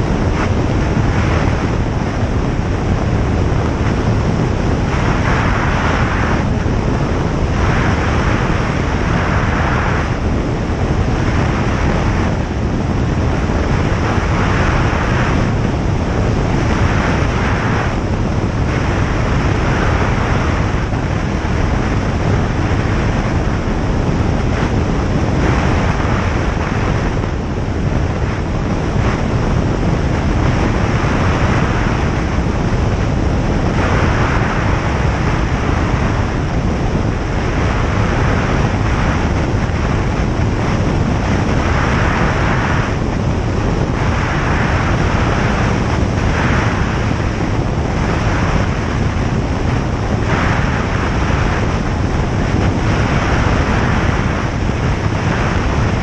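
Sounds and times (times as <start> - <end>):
light aircraft engine drone: 0.0 - 56.0.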